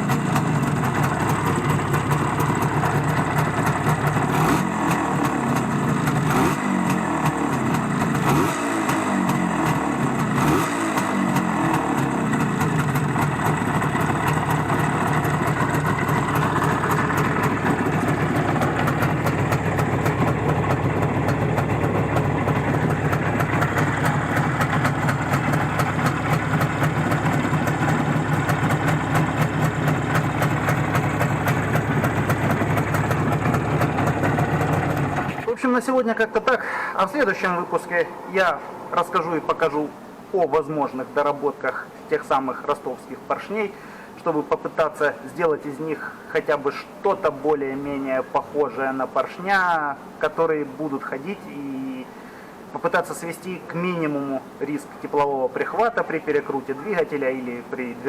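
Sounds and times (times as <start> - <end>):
motorcycle engine revving and idling: 0.0 - 35.7.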